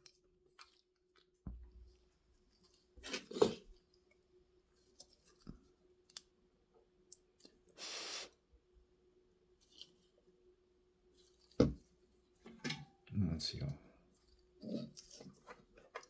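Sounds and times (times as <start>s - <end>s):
short hiss: 7.8s - 8.3s.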